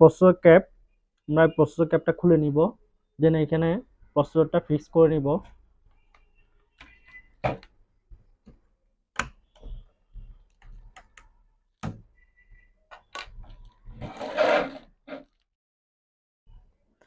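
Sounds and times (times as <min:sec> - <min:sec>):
rustling scrape: 0:14.0 - 0:15.4.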